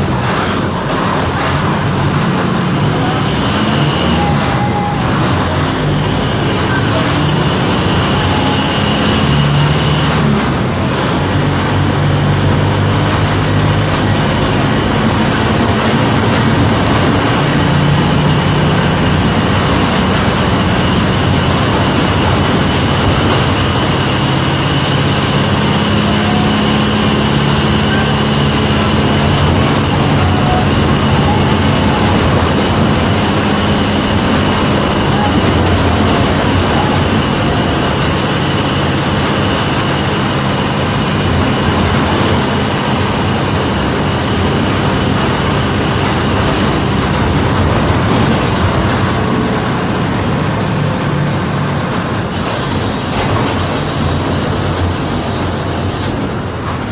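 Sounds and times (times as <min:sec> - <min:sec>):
bus engine running: 0:00.0 - 0:56.9
thin high whine: 0:14.1 - 0:47.2.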